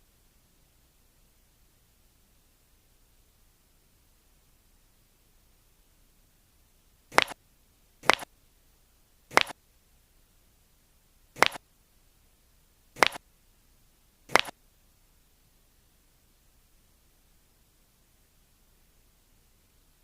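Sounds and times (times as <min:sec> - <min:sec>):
sharp double cracks: 0:07.1 - 0:07.4, 0:08.0 - 0:08.3, 0:09.3 - 0:09.6, 0:11.4 - 0:11.6, 0:13.0 - 0:13.2, 0:14.3 - 0:14.5.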